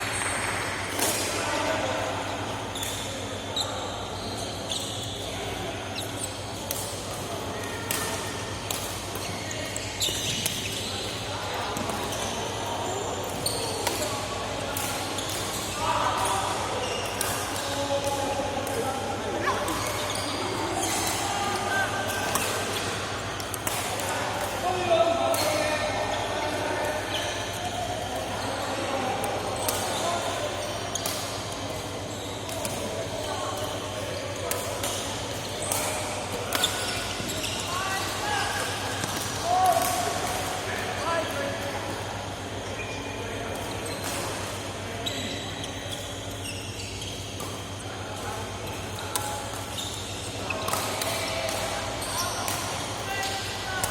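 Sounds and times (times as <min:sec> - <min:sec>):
murmur of voices: 0:00.0 - 0:53.9
shoes squeaking on floor: 0:02.6 - 0:05.3, 0:09.2 - 0:11.1, 0:12.1 - 0:13.8, 0:45.0 - 0:47.8, 0:49.8 - 0:50.7.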